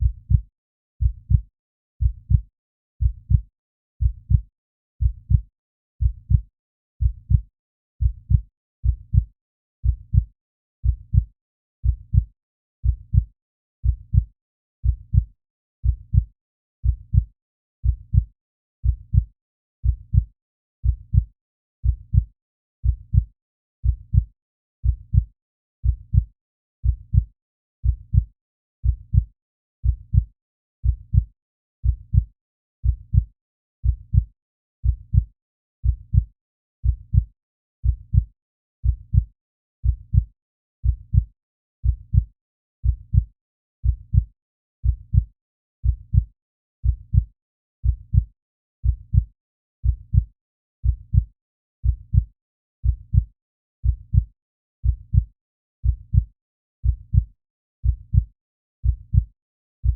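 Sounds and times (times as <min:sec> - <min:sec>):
heartbeat thumps: 0:00.0 - 0:00.4, 0:01.0 - 0:01.4, 0:02.0 - 0:02.4, 0:03.0 - 0:03.4, 0:04.0 - 0:04.4, 0:05.0 - 0:05.4, 0:06.0 - 0:06.4, 0:07.0 - 0:07.4, 0:08.0 - 0:08.4, 0:09.0 - 0:10.3, 0:10.9 - 0:16.3, 0:16.9 - 0:18.3, 0:20.9 - 0:21.3, 0:21.9 - 0:22.3, 0:22.9 - 0:23.3, 0:23.9 - 0:24.2, 0:24.9 - 0:25.3, 0:26.8 - 0:27.3, 0:29.9 - 0:30.2, 0:30.9 - 0:31.2, 0:31.9 - 0:32.2, 0:32.9 - 0:33.3, 0:34.9 - 0:35.3, 0:35.9 - 0:37.2, 0:37.8 - 0:39.2, 0:39.8 - 0:40.2, 0:40.9 - 0:41.2, 0:41.8 - 0:42.2, 0:42.8 - 0:43.2, 0:43.8 - 0:44.2, 0:44.8 - 0:45.2, 0:45.8 - 0:46.2, 0:46.8 - 0:47.2, 0:47.8 - 0:48.2, 0:48.8 - 0:49.2, 0:49.8 - 0:50.2, 0:50.8 - 0:51.2, 0:51.8 - 0:52.2, 0:52.8 - 0:53.2, 0:53.8 - 0:54.2, 0:54.8 - 0:55.2, 0:55.8 - 0:56.2, 0:56.8 - 0:57.2, 0:57.8 - 0:58.2, 0:58.8 - 0:59.2.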